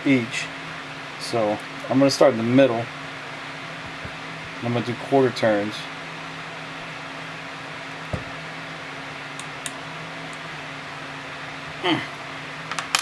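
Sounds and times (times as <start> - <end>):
fan-like hum: 0.0 - 13.0
dull knock: 3.8 - 4.6, 8.1 - 8.4.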